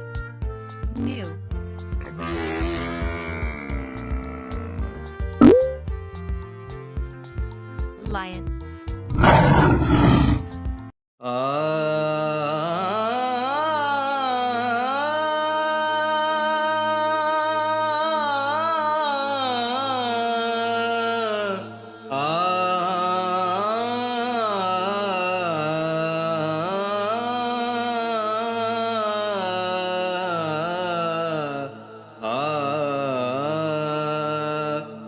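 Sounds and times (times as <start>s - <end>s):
wordless chant-like melody: 11.2s - 35.0s.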